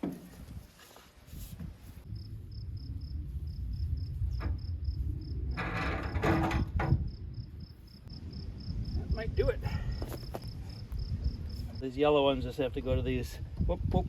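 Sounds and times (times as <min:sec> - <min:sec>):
crickets chirping: 0:02.0 - 0:12.3
low rumble: 0:02.0 - 0:14.0.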